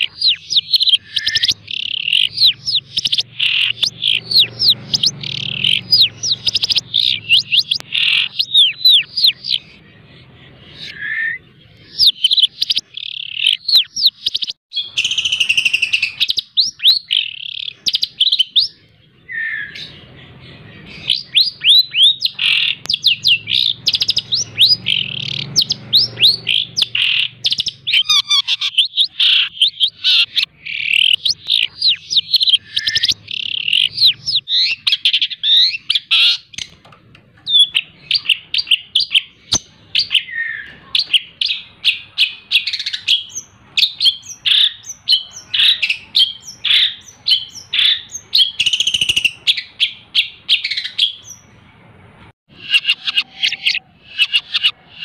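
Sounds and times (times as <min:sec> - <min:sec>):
shrike singing: 0:00.0 - 0:36.8.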